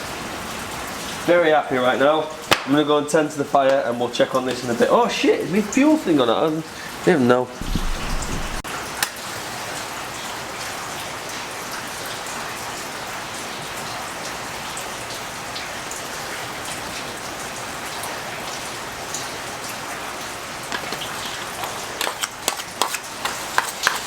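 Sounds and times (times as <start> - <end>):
steady rain: 0.0 - 24.0
water drips: 7.6 - 24.0.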